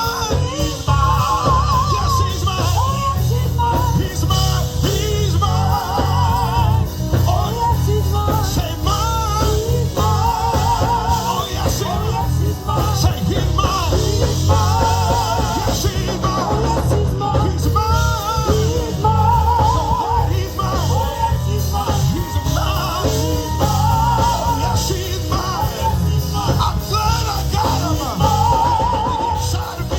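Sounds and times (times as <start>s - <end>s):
drum kit: 0.0s - 29.9s
electric bass: 0.0s - 29.9s
organ runs: 0.0s - 29.9s.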